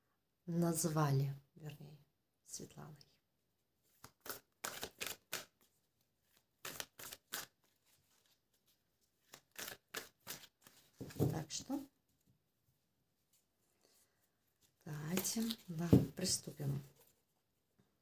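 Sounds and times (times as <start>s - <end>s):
cards being shuffled: 3.9s - 11.3s, 15.0s - 17.1s.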